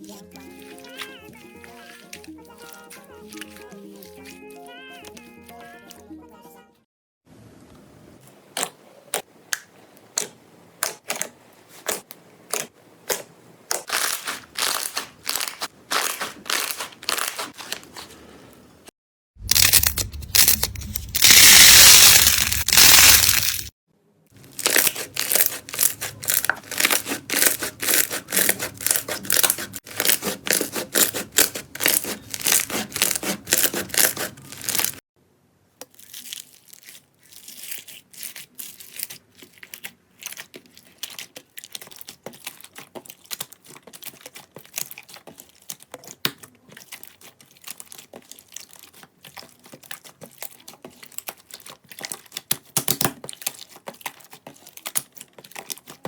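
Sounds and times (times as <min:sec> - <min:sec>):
slime crackling and popping: 0:11.9 - 0:17.8, 0:19.4 - 0:23.7, 0:24.5 - 0:35.0, 0:35.9 - 0:56.0.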